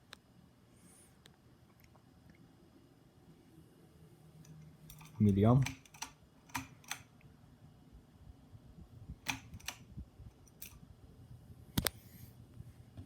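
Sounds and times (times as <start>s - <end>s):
ceiling fan humming: 0.0s - 13.0s
sharp clicks: 4.4s - 7.1s, 9.2s - 10.8s.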